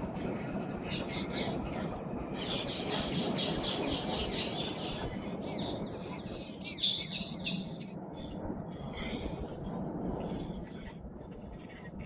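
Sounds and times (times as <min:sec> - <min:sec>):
low background noise: 0:00.0 - 0:12.0
small birds singing: 0:02.4 - 0:07.9.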